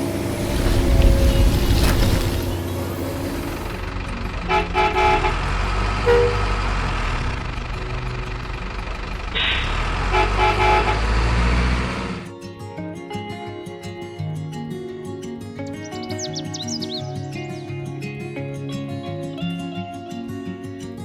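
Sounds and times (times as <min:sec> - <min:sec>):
truck engine running: 0:00.0 - 0:12.3
truck horn blasts: 0:00.5 - 0:12.3.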